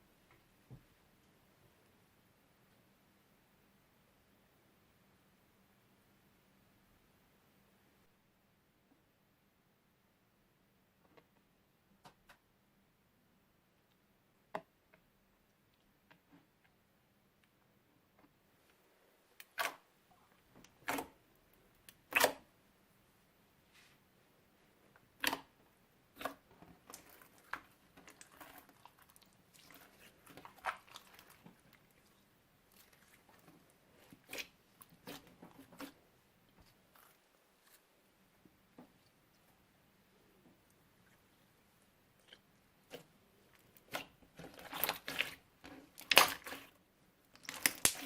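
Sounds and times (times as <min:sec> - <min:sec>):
slime squished by hand: 0:42.2 - 0:46.7, 0:47.3 - 0:48.0
slime pops and snaps: 0:47.4 - 0:48.0.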